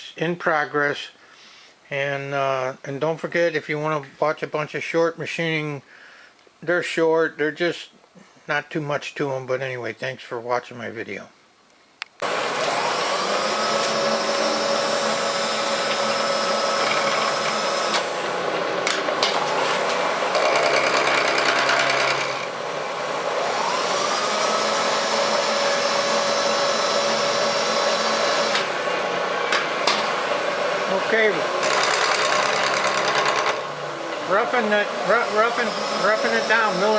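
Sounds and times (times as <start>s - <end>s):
milling machine cutting metal: 12.3s - 22.6s, 23.2s - 28.9s, 29.8s - 36.9s.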